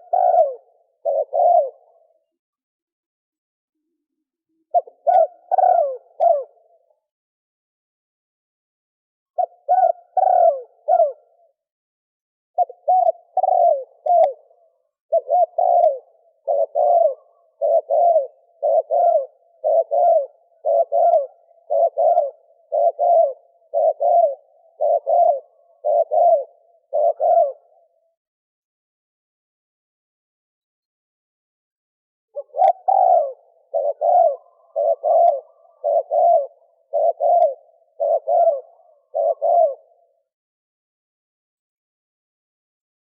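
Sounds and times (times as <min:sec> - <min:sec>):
dove cooing: 0:00.0 - 0:02.4, 0:04.5 - 0:06.9, 0:09.4 - 0:11.6, 0:12.6 - 0:28.1, 0:32.4 - 0:40.3.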